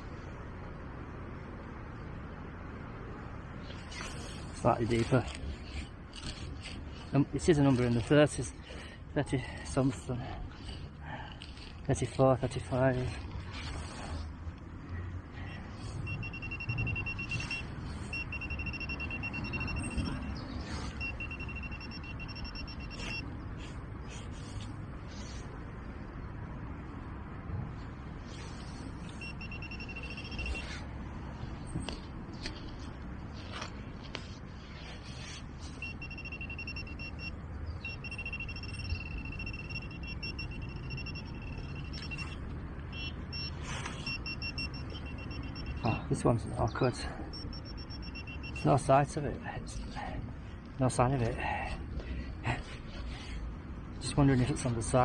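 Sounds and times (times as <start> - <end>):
metal detector pulsing beep: 15.8 - 23.3, 29.0 - 30.8, 35.7 - 46.1, 47.3 - 48.8.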